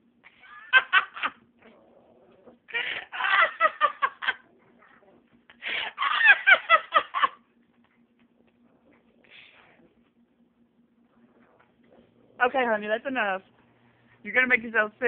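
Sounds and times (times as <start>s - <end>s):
faint steady hum: 0.0s - 15.0s
person laughing: 0.3s - 1.4s, 2.7s - 4.5s, 5.6s - 7.4s.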